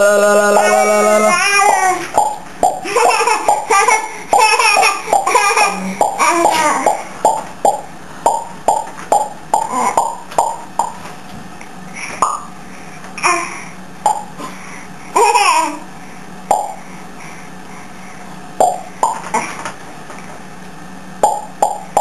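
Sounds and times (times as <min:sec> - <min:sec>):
baby laughing and giggling: 0:00.6 - 0:02.2, 0:02.8 - 0:06.9, 0:15.2 - 0:15.8.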